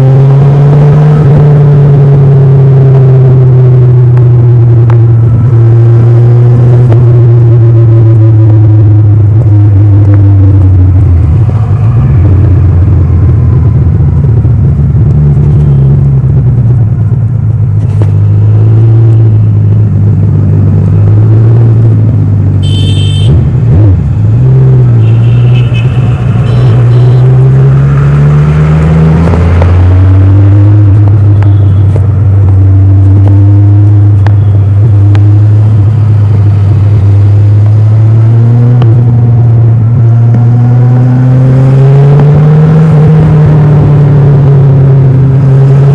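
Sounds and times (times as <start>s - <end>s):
motorcycle engine accelerating: 0.0s - 45.9s.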